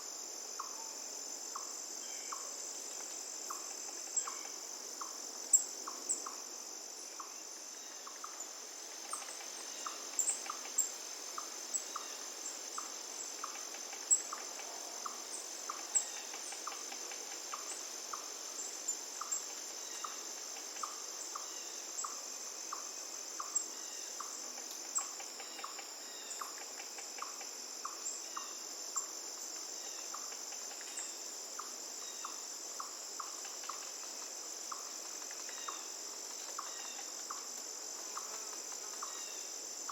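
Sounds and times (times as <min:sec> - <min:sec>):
trilling insects chorus: 0:00.0 - 0:39.9.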